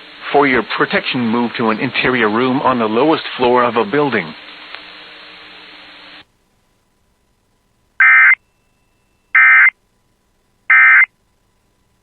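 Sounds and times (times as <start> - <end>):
digital data tone bursts: 8.0 - 8.4, 9.3 - 9.7, 10.7 - 11.1.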